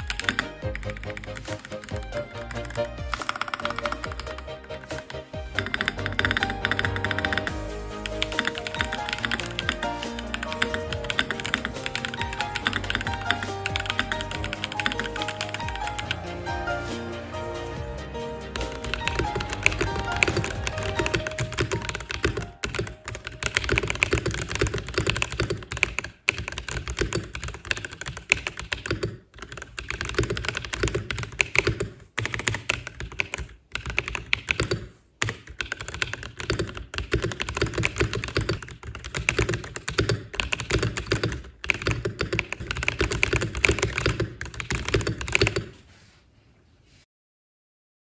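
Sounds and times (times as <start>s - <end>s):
mechanical keyboard typing: 0.0s - 16.4s, 18.6s - 45.7s.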